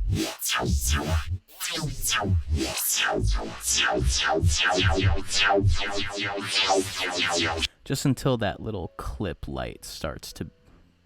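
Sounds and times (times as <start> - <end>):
stuttering glitch sweeps falling: 0.0 - 7.7.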